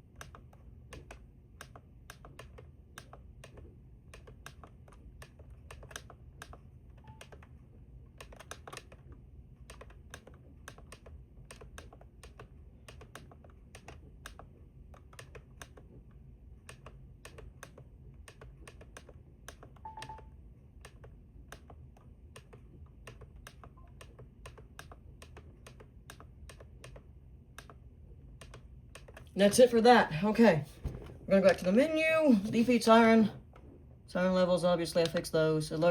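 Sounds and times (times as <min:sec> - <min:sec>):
short electronic beep: 0:19.9 - 0:20.3.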